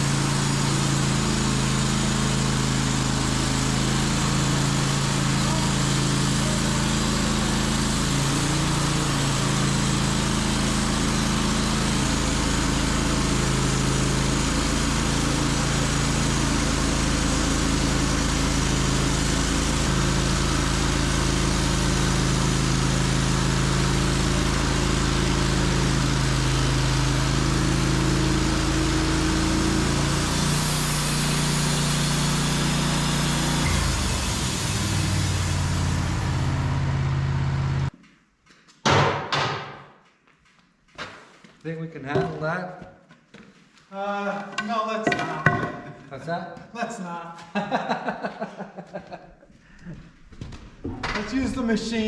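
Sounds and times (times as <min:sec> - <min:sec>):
sawmill engine running: 0:00.0 - 0:37.9, 0:50.8 - 0:52.0.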